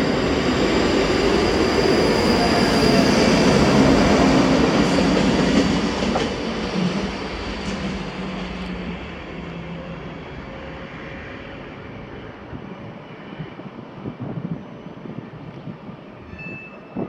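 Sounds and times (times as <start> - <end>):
train rumble: 0.0 - 17.0.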